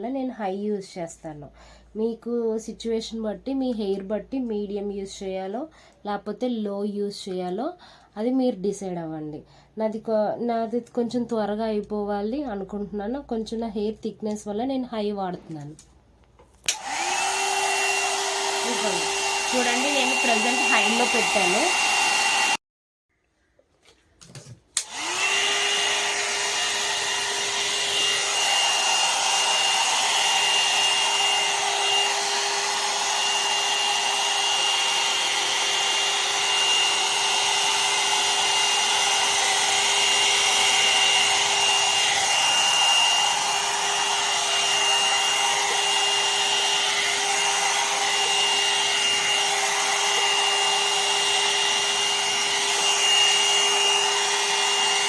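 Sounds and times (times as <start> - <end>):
hot air brush fan motor whining: 16.7 - 22.6, 24.8 - 55.0.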